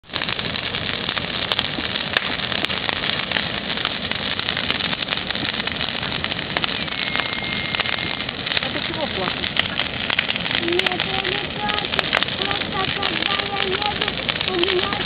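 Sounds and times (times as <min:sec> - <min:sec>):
burning wood popping: 0:00.0 - 0:15.0
campfire crackling and hissing: 0:00.0 - 0:15.0.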